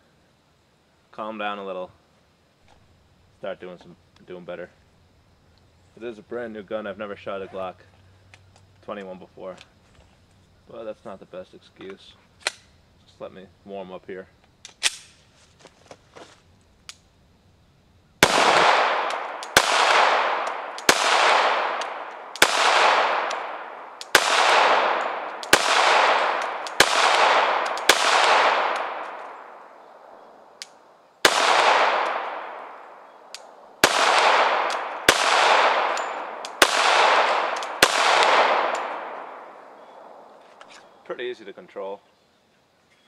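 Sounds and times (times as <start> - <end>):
pistol shots with echo: 18.2 - 29.7, 31.2 - 33.0, 33.8 - 40.3.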